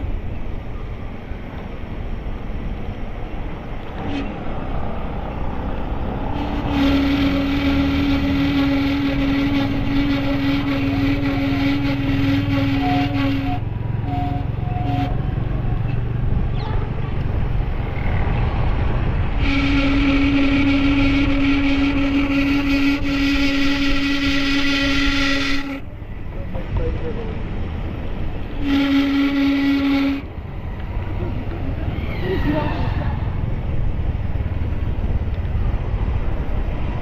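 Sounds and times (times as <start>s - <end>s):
vehicle horn: 6.3s - 15.4s, 19.4s - 25.9s, 28.4s - 30.4s.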